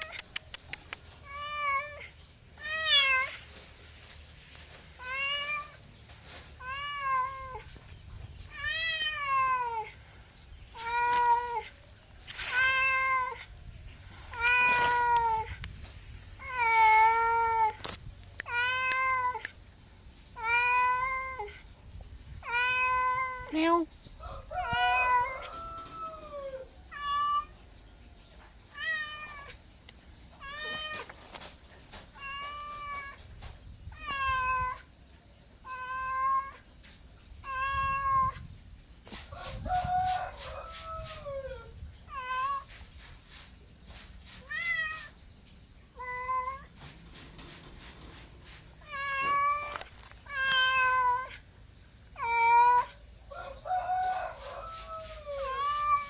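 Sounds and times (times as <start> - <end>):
cat meowing: 6.6 - 7.7, 8.5 - 9.9, 37.4 - 38.4, 48.8 - 51.4, 55.1 - 56.0.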